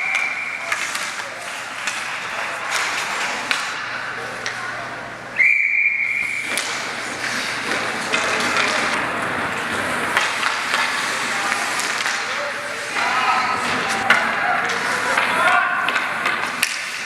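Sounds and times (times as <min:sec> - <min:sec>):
referee's whistle blast: 0:05.4 - 0:06.5.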